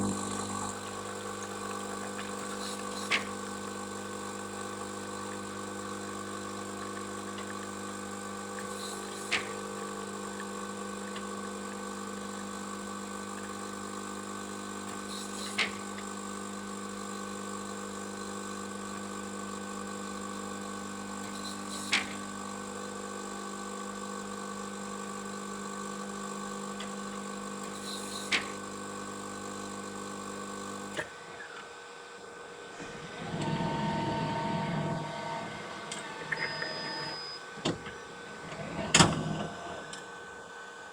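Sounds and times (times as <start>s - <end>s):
whirring with a clear tone: 0.0s - 7.6s, 32.6s - 40.9s
coffee machine humming: 0.0s - 40.9s.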